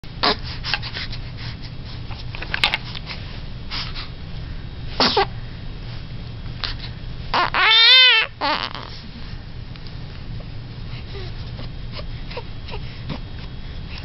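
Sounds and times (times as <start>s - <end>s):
steady low hum: 0.0s - 14.0s
baby sneezing: 5.0s - 5.3s
soft breathy sounds: 10.8s - 14.0s.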